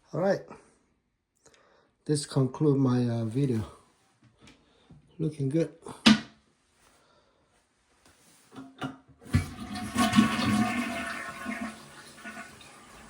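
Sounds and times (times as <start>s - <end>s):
toilet flush clicks: 8.6s - 13.0s
toilet water rushing: 9.2s - 13.0s.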